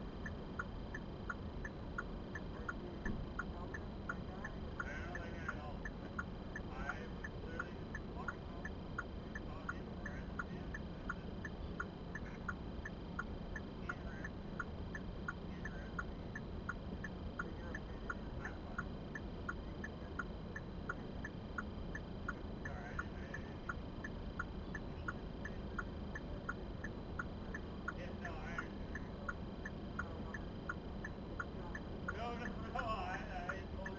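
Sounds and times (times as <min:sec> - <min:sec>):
low hum inside car: 0:00.0 - 0:33.9.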